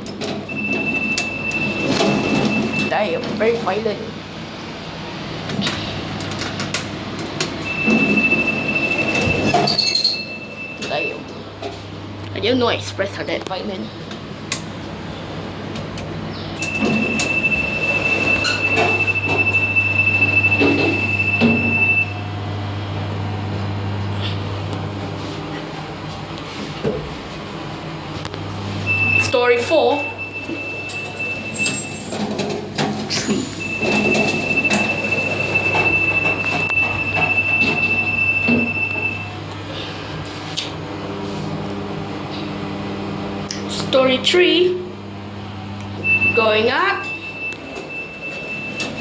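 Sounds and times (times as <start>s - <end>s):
lift car humming: 0.0s - 49.0s
high-pitched beep: 7.6s - 11.2s, 28.9s - 32.1s
high-pitched lift squeal: 7.6s - 11.2s, 28.9s - 32.2s
lift car clunks and rattles: 15.8s - 22.0s, 30.2s - 39.3s.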